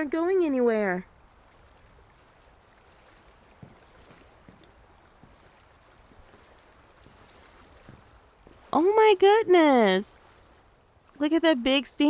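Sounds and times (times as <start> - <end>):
faint trickling water: 0.0 - 12.0
soft drips: 1.0 - 8.8, 10.1 - 11.3.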